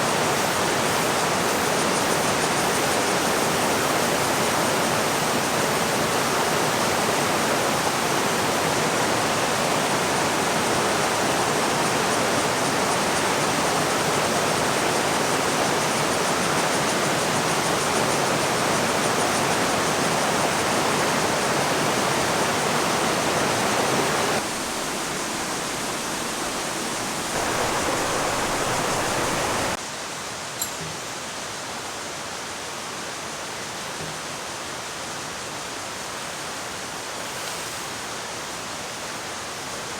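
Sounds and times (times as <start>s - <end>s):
mountain stream rushing: 0.0s - 39.9s.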